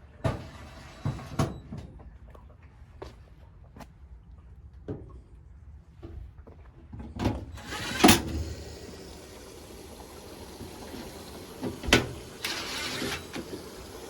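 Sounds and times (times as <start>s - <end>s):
washing machine clunks: 7.2s - 14.0s
washing machine running: 7.3s - 14.0s.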